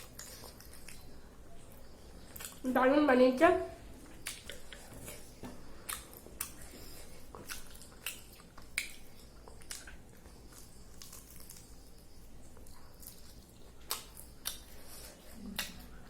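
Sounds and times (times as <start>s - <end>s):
person chewing: 0.0s - 2.6s, 4.0s - 16.0s
mouth clicks and smacks: 4.1s - 6.7s, 7.3s - 11.6s, 15.4s - 16.0s.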